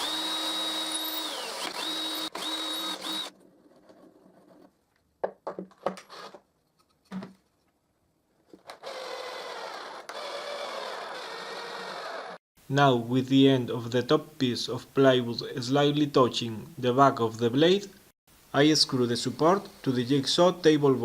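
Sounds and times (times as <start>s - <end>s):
electric drill whining: 0.0s - 3.3s, 8.7s - 12.4s.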